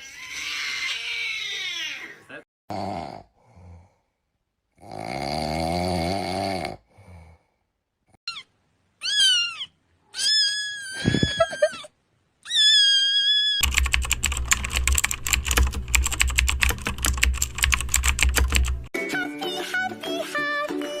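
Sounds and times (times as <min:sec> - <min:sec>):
cat meowing: 0:08.3 - 0:13.6
keyboard typing clatter: 0:13.6 - 0:18.9.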